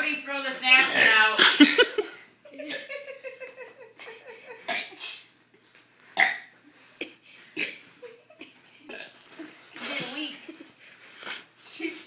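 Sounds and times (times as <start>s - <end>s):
girl's long burp: 6.2s - 6.5s, 8.9s - 9.2s.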